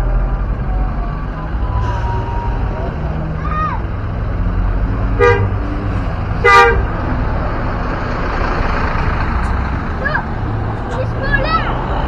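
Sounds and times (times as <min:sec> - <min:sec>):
low engine rumble: 0:00.0 - 0:12.0
bus horn blasts: 0:05.1 - 0:05.7, 0:06.4 - 0:07.0.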